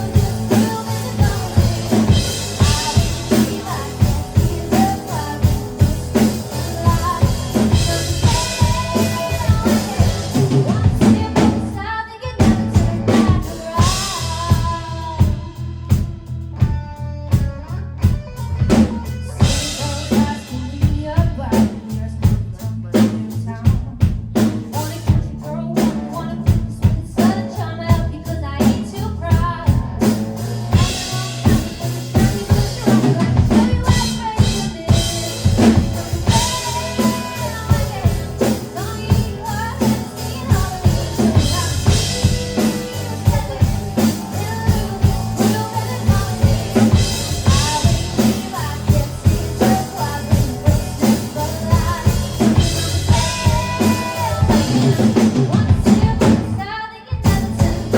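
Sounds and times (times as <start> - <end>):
drum kit beat: 0.0 - 57.9
live band playing: 0.0 - 57.9.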